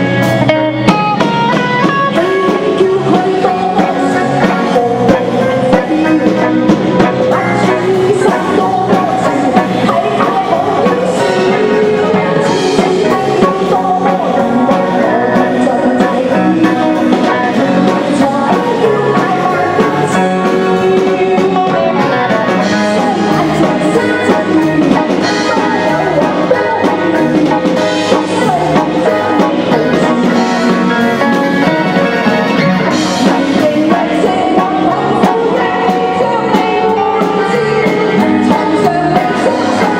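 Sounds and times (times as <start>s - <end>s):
band music with drums and guitar: 0.0s - 39.9s.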